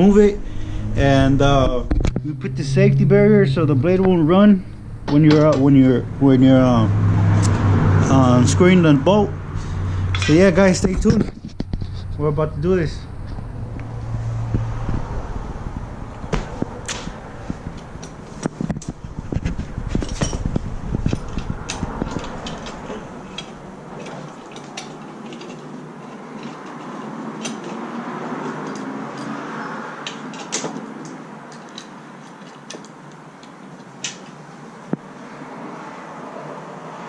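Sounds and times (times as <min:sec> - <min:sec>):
low rumble: 0:00.0 - 0:23.7.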